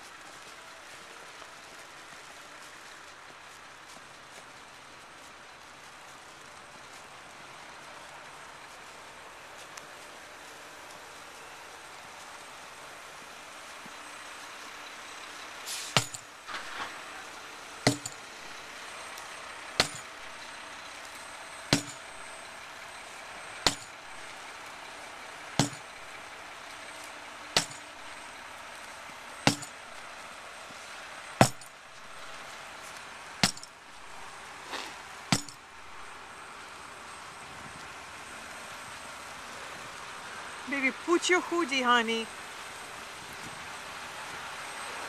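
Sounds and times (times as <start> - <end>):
hammer blows ringing: 15.9 - 16.9, 17.9 - 18.6, 19.8 - 20.4, 21.7 - 22.3, 23.7 - 24.2, 25.6 - 26.1, 27.6 - 28.1, 29.5 - 30.0, 31.4 - 32.4, 33.4 - 34.2, 35.3 - 36.1.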